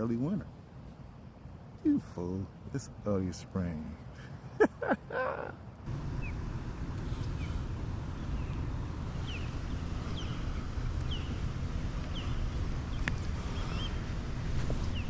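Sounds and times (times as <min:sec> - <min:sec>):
bird chirping: 0:06.1 - 0:06.4, 0:07.1 - 0:14.1, 0:14.8 - 0:15.0.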